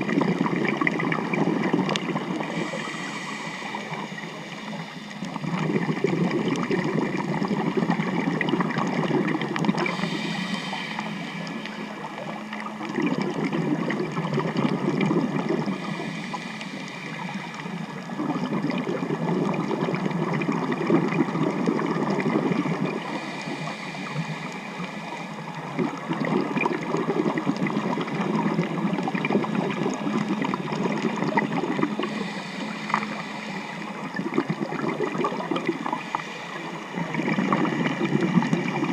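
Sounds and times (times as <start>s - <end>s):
diver's exhaled bubbles gurgling: 0.0s - 38.9s
regulator inhalation hiss: 2.2s - 5.9s, 9.8s - 12.6s, 15.6s - 18.2s, 22.9s - 25.6s, 31.2s - 34.2s, 35.3s - 37.2s.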